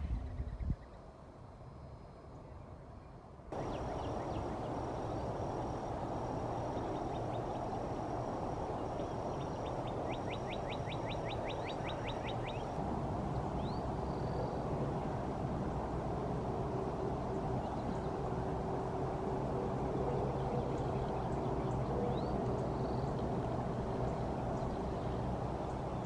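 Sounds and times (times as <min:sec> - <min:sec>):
steady rushing noise: 0:03.5 - 0:26.0
birds calling and chirping: 0:03.6 - 0:12.8.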